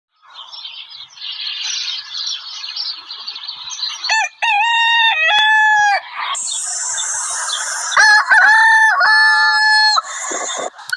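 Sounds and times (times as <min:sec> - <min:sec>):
rooster crowing: 0:04.1 - 0:06.1, 0:06.9 - 0:10.7.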